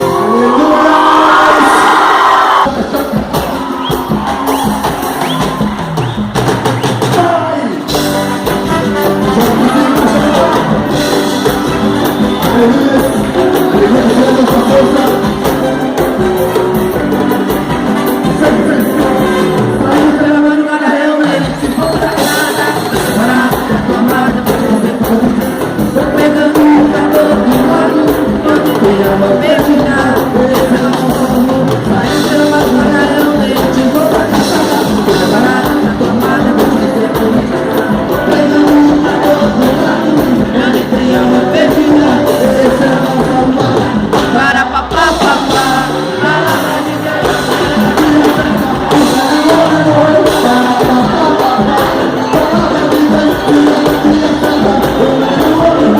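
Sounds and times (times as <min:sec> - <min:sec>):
steady drum beat: 0:00.0 - 0:20.5, 0:21.2 - 0:55.9
gospel band playing: 0:00.0 - 0:55.9
voices singing: 0:25.9 - 0:55.9.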